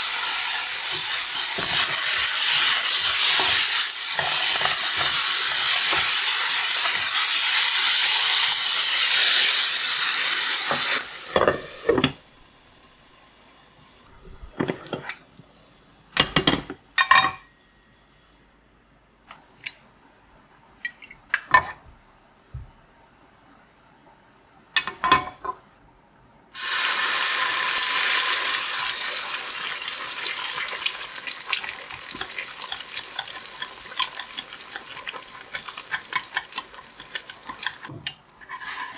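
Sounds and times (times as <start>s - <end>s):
food sizzling in a frying pan: 0.0s - 14.1s, 26.6s - 38.9s
utensils clinking against dishes: 30.2s - 38.9s.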